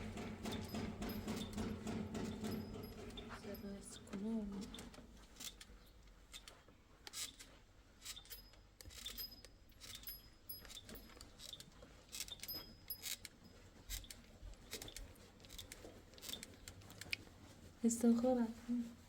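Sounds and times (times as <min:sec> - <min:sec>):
clicks and clinks of small objects: 0:06.3 - 0:17.2.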